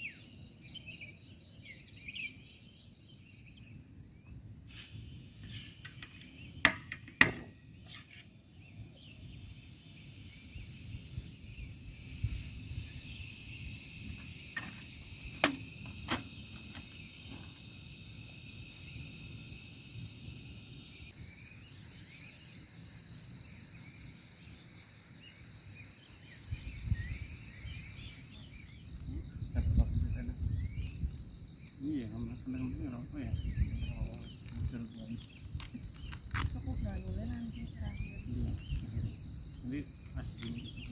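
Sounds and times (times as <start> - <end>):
insects chirring drone: 0.0 - 40.9
pulsing insect chirp: 0.0 - 40.9
sharp clicks: 4.7 - 21.2.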